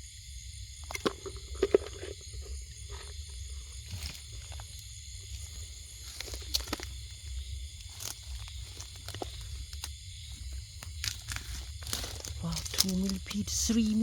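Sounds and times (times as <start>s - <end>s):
rustling in dry leaves: 3.6s - 14.0s.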